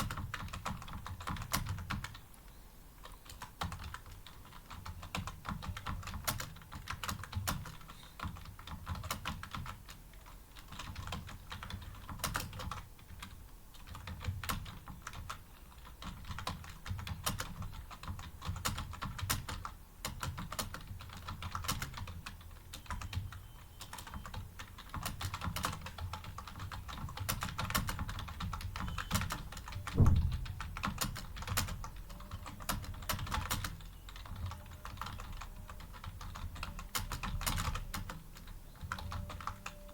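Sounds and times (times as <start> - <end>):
fast typing on computer keyboard: 0.0 - 2.3, 3.0 - 39.9
heavy thump: 30.0 - 30.5.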